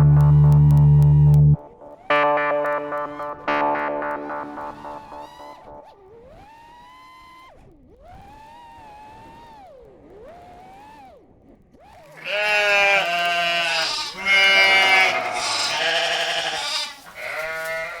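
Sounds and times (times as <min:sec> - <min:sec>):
synth music with bass: 0:00.0 - 0:07.4.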